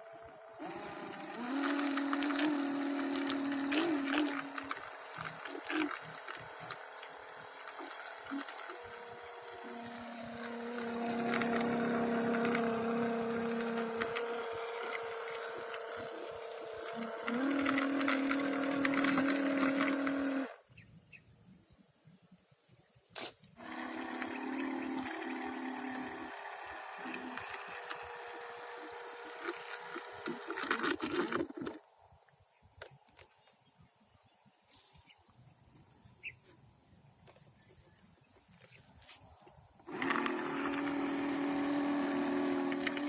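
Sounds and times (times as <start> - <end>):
high-pitched insect trill: 0.0 - 18.0
small electric motor whining: 0.0 - 20.7, 23.2 - 32.1, 37.3 - 43.0.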